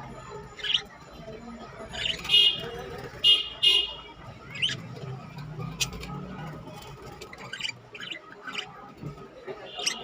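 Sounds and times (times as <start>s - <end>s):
pet birds chirping and clicking: 0.4s - 1.2s, 1.9s - 3.3s, 4.3s - 10.0s.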